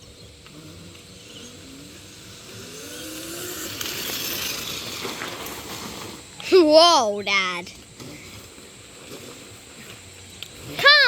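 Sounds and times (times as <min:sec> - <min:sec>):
electric motor whining: 0:00.0 - 0:06.4.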